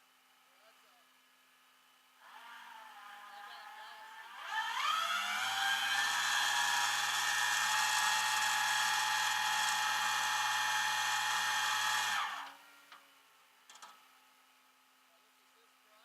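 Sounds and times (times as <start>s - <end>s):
small electric motor whining: 2.2s - 12.6s.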